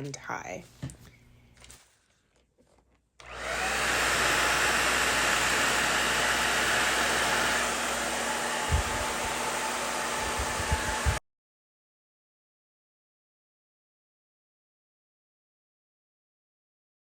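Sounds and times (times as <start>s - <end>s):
blow dryer running: 3.2s - 11.2s.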